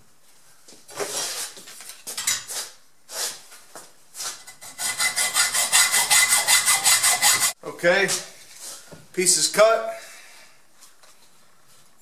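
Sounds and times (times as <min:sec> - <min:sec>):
hacksaw sawing metal pipe: 0:04.4 - 0:07.6.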